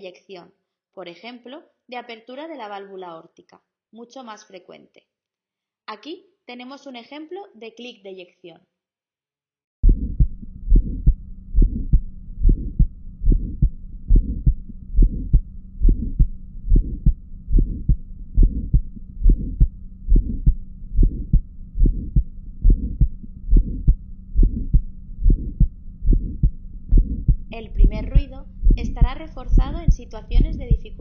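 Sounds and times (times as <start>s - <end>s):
heart valve click: 9.8s - 30.9s
faint steady hum: 9.8s - 31.0s
heartbeat thuds: 9.8s - 31.0s.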